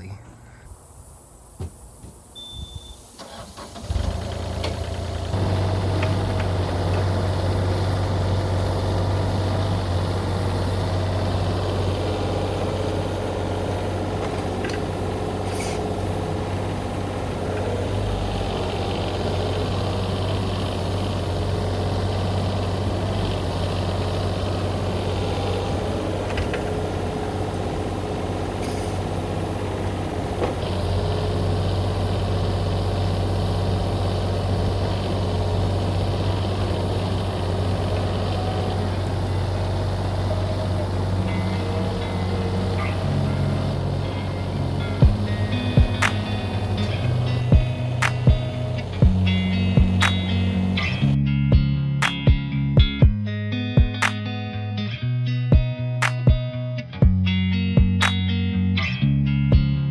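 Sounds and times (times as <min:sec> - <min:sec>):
excavator diesel engine running: 0:02.1 - 0:53.2
sharp metal clanks: 0:15.4 - 0:15.9.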